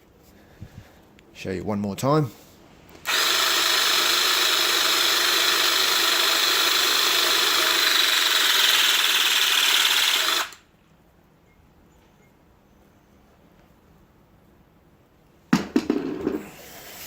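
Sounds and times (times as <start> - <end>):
hydraulic crimper motor whine: 3.0 - 10.6.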